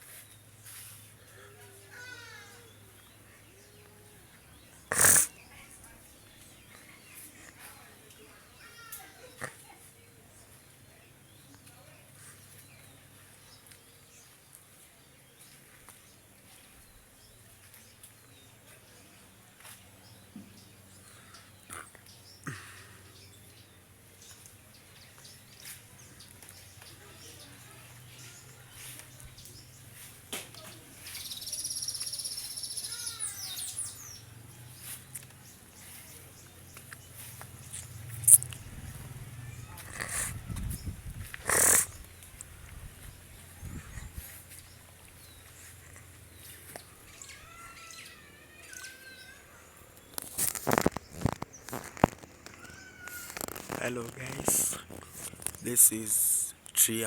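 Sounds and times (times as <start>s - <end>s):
faint bird chirps: 20.0s - 41.0s, 43.4s - 51.8s
bird trilling: 31.2s - 34.2s.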